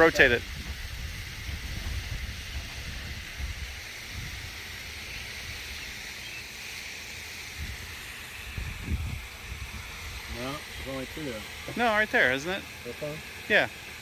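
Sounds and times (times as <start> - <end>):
wind rumbling on microphone: 0.0 - 5.8, 7.5 - 12.0
faint high hiss: 0.0 - 14.0.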